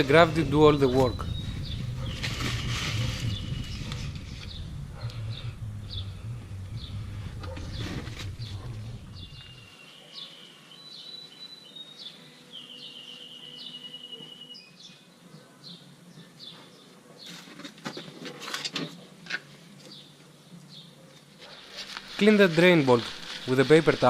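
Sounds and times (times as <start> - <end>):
low rumble: 0.0 - 9.7, 22.0 - 24.0
small birds chirping: 0.0 - 18.3.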